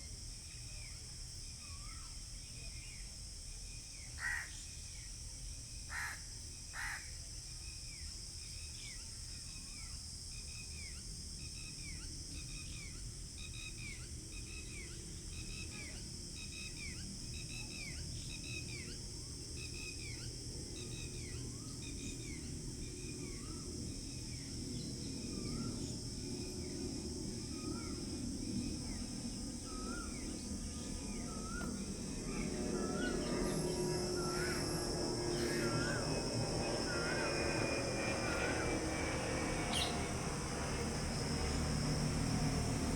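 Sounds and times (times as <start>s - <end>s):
insects droning: 0.0s - 42.9s
crow cawing: 4.2s - 4.5s, 5.9s - 6.2s, 6.8s - 7.1s.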